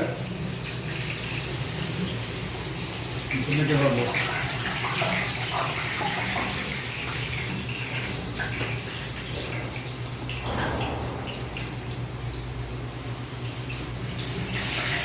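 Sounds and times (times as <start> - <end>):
water running from tap: 0.0 - 15.0
low steady hum: 10.3 - 14.2.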